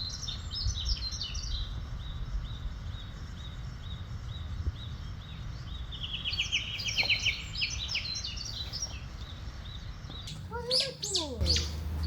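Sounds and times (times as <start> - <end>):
birds chirping: 0.0 - 12.0
low outdoor rumble: 0.0 - 12.0
bird trilling: 6.2 - 9.0, 10.3 - 12.0.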